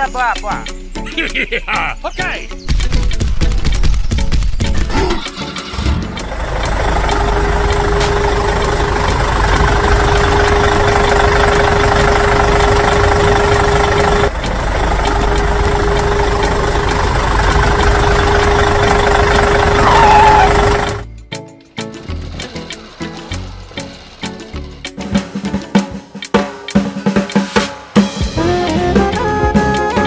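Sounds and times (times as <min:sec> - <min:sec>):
engine running with steady tone: 0:04.8 - 0:26.2.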